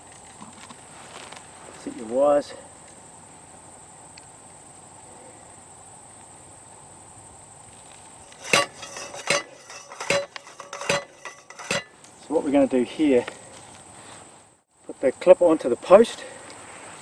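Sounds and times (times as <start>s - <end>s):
metal fencing hardware clinking: 8.3s - 11.9s.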